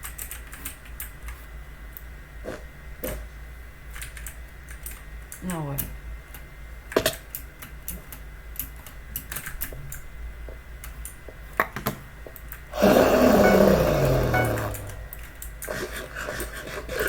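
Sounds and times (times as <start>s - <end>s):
mechanical keyboard clicks: 0.0s - 1.1s, 4.0s - 5.9s, 8.6s - 10.0s
loud rasping sound falling pitch: 12.8s - 15.1s.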